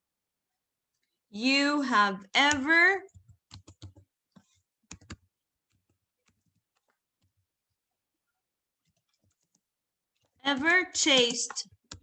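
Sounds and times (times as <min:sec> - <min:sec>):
keyboard typing clicks: 0:02.5 - 0:04.1, 0:04.9 - 0:05.2.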